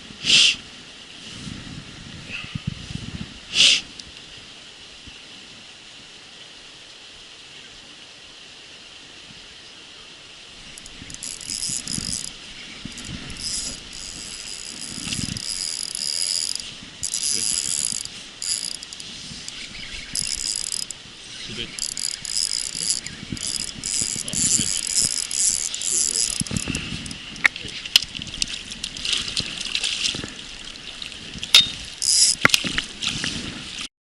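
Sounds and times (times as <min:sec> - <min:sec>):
fishing reel gear whirring: 0:10.7 - 0:28.1, 0:31.6 - 0:32.8.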